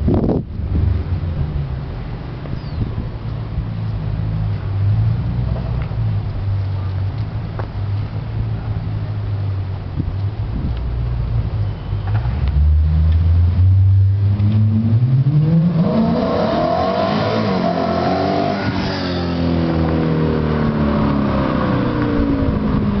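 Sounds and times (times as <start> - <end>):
car engine accelerating past: 12.0 - 23.0.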